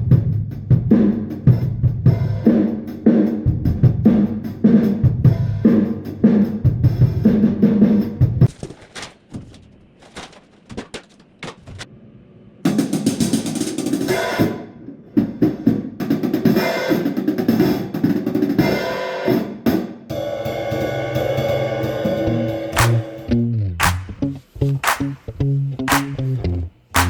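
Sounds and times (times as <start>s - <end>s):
pitched music with bass notes: 22.8s - 23.1s, 23.8s - 26.4s
drum kit playing: 22.8s - 23.2s, 23.8s - 26.4s.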